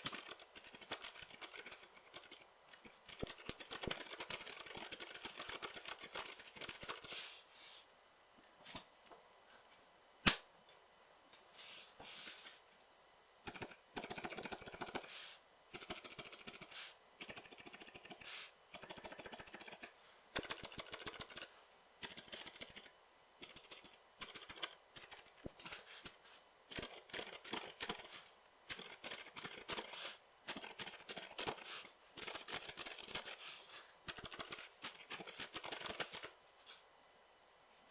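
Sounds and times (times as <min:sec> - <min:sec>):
faint keyboard typing: 0:00.0 - 0:07.2, 0:13.4 - 0:15.1, 0:15.7 - 0:36.4.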